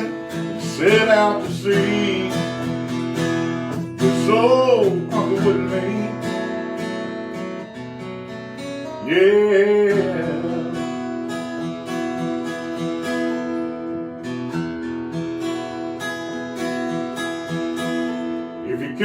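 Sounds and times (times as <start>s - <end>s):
man singing: 0.0s - 7.0s, 8.8s - 11.4s, 18.6s - 19.0s
strummed acoustic guitar: 0.0s - 19.0s.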